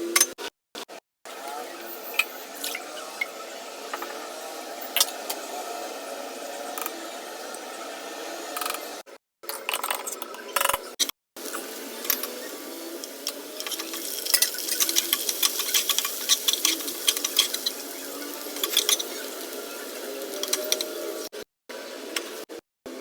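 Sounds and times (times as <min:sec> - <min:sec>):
food sizzling: 0:01.3 - 0:09.0, 0:11.4 - 0:21.3.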